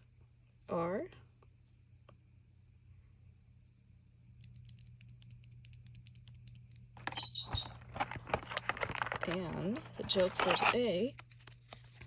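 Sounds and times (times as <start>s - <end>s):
rustling handling noise: 7.0s - 12.0s.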